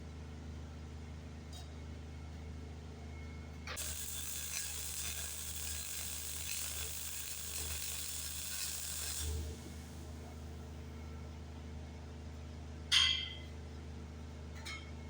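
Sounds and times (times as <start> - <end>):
arc welding hiss: 3.8 - 10.5.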